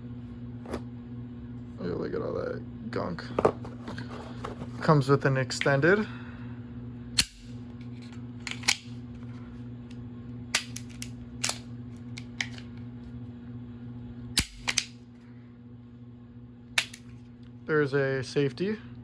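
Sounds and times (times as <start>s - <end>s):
pistol and magazines clicking: 7.2s - 7.5s, 8.5s - 8.9s, 10.6s - 11.6s, 14.4s - 15.0s, 16.8s - 17.1s.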